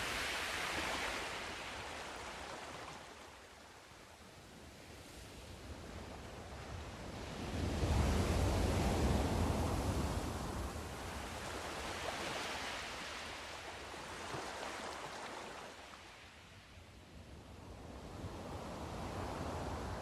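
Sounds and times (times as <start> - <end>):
sea waves washing in: 0.0 - 3.4.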